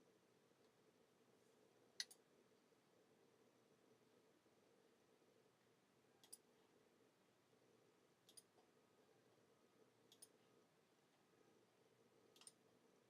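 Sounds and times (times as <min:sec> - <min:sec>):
low room hum: 0:00.0 - 0:13.0
faint sharp clicks: 0:02.0 - 0:02.3, 0:06.2 - 0:06.5, 0:08.2 - 0:08.7, 0:10.1 - 0:10.4, 0:12.3 - 0:12.6.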